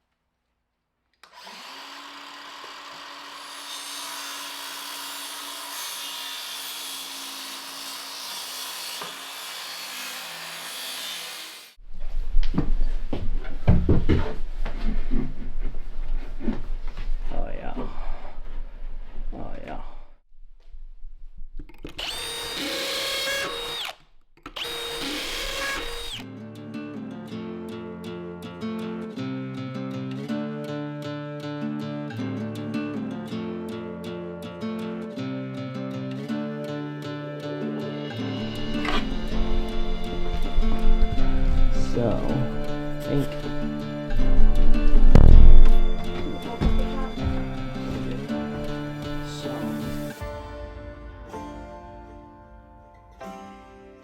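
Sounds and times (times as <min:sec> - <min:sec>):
power tool cutting wood: 0:01.2 - 0:11.8, 0:21.8 - 0:26.2, 0:37.9 - 0:50.2
strummed acoustic guitar music: 0:26.2 - 0:54.0.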